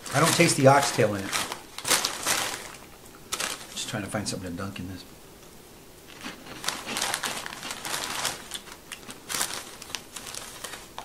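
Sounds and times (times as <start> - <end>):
snack packet crinkling: 0.0 - 3.8, 6.1 - 11.0.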